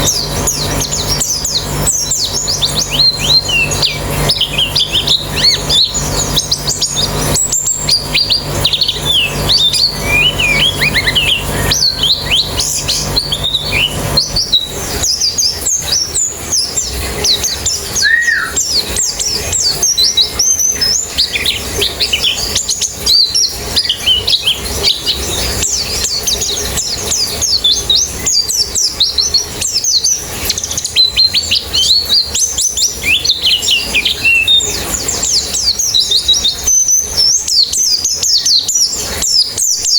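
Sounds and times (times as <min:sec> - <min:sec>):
low steady hum: 0:00.0 - 0:28.3
birds chirping and twittering: 0:00.0 - 0:39.9.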